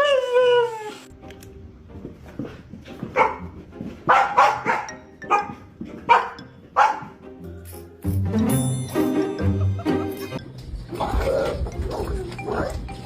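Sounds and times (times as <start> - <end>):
dog wailing: 0.0 - 1.1
dog barking: 3.1 - 7.2.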